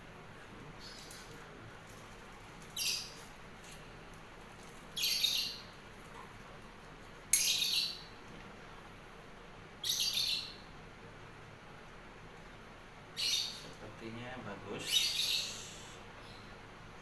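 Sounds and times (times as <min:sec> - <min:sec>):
bird chirping: 0:00.8 - 0:01.2, 0:02.7 - 0:03.2, 0:05.0 - 0:05.8, 0:07.3 - 0:08.2, 0:09.8 - 0:10.7, 0:13.1 - 0:13.8, 0:14.8 - 0:16.6.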